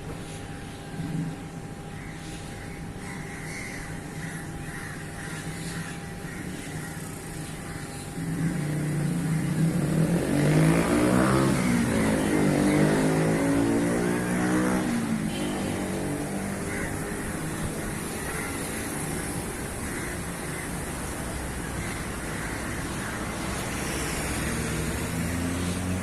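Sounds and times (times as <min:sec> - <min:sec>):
vehicle driving past: 0:08.2 - 0:16.9.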